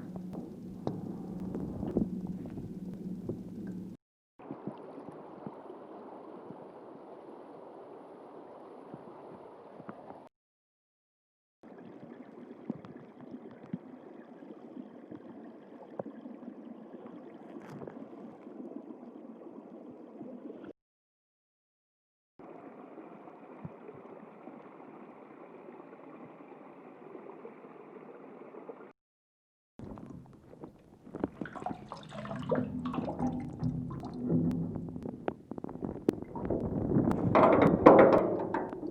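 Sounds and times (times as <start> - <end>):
underwater bubbling and gurgling: 0.0 - 10.2, 11.7 - 20.7, 29.8 - 38.9
small underwater clicks: 11.9 - 20.7, 29.8 - 38.9.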